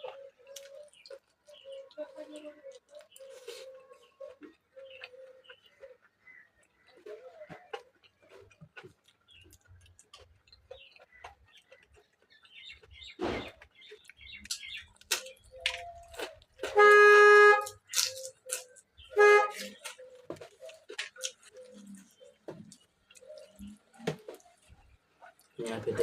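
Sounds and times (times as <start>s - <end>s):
chewing and mouth smacks: 0.0s - 16.8s, 17.6s - 25.6s
vehicle horn honking: 16.7s - 17.8s, 19.2s - 19.7s.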